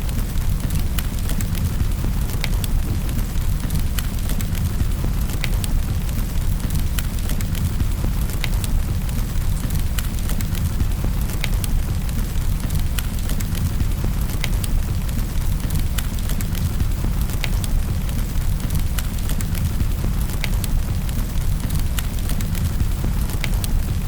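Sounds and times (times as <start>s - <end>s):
wood fire crackling: 0.0s - 24.0s.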